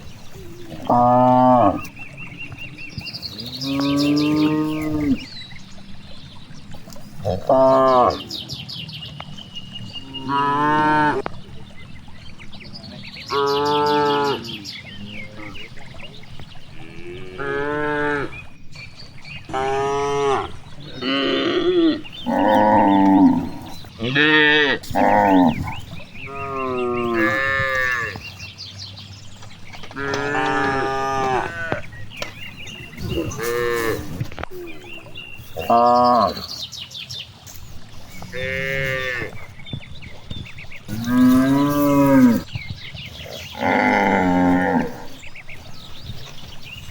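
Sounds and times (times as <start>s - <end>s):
cattle mooing: 0.3s - 5.4s, 7.2s - 8.3s, 9.9s - 11.3s, 16.7s - 18.5s, 19.5s - 28.2s, 29.7s - 36.5s, 38.1s - 39.7s, 40.8s - 42.5s, 43.2s - 45.4s.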